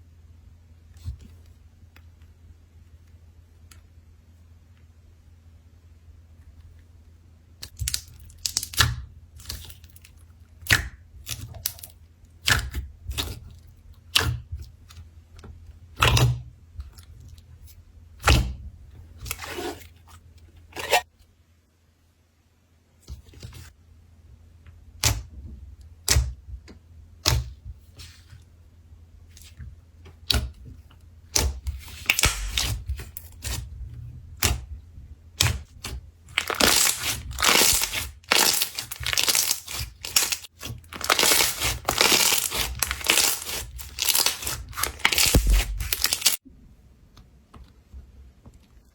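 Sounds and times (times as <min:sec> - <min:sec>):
slime popping and crackling: 0:07.7 - 0:09.9, 0:31.3 - 0:33.6, 0:35.4 - 0:46.4.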